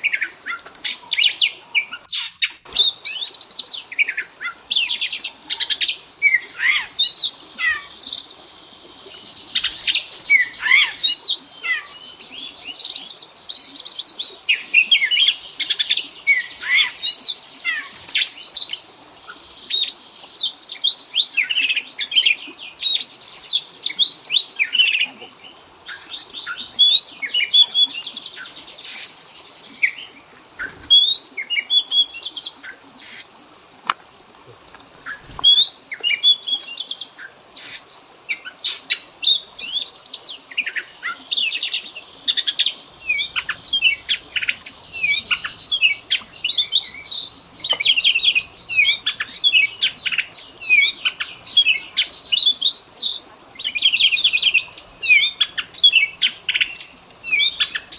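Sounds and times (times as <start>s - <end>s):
songbird singing whistles and chirps: 0.0s - 33.9s, 35.0s - 57.9s.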